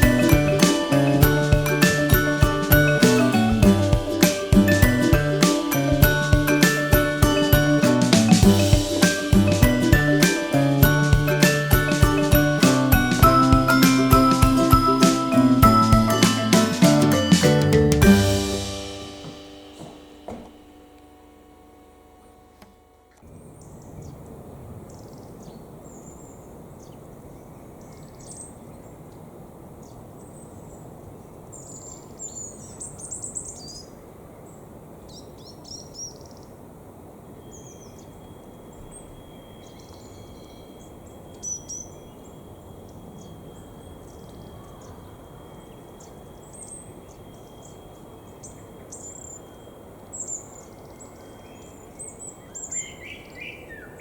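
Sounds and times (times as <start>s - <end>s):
thin high tone: 0.0s - 22.9s
small birds chirping: 29.8s - 36.6s, 37.5s - 54.0s.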